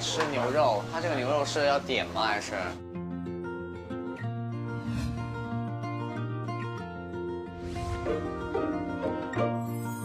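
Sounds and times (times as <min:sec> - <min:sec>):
plucked string notes: 0:07.8 - 0:09.9.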